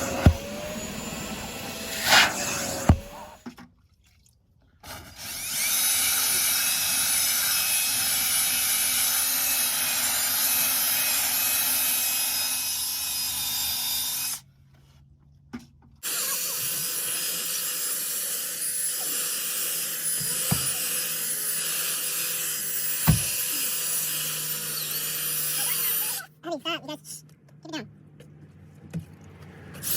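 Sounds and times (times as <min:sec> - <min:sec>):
electric tool motor whining: 0:00.0 - 0:03.4, 0:05.0 - 0:14.4, 0:16.0 - 0:26.3.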